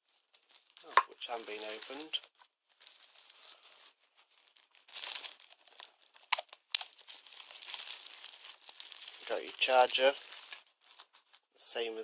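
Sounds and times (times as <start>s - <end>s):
plastic packaging crinkling: 0.0s - 11.5s.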